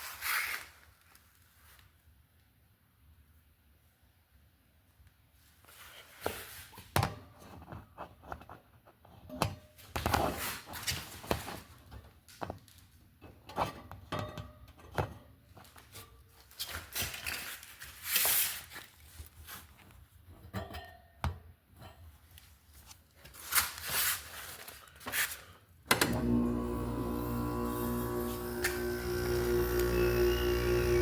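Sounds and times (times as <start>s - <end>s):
window air conditioner humming: 26.1s - 31.0s.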